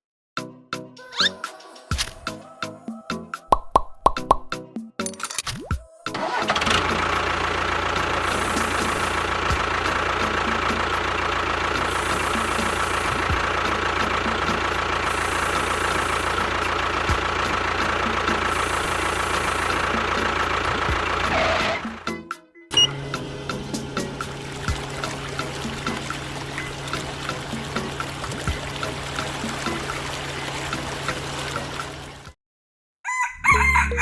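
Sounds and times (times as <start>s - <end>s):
engine-like running noise: 6.1s - 32.4s
constant whine: 6.2s - 22.1s.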